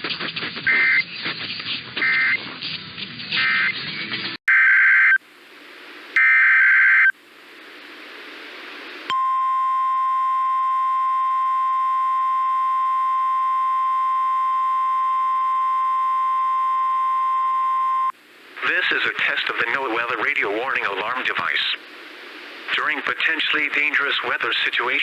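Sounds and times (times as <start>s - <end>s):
radio static hiss: 4.5s - 9.1s, 10.0s - 25.0s
steady warning alarm tone: 9.1s - 18.1s.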